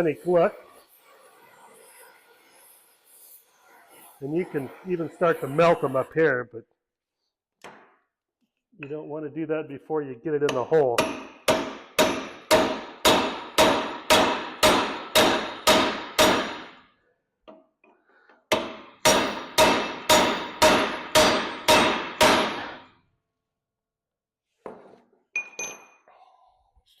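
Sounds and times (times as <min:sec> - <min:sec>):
hammer striking metal rivet: 0:10.5 - 0:16.7, 0:18.5 - 0:22.8, 0:25.4 - 0:26.0.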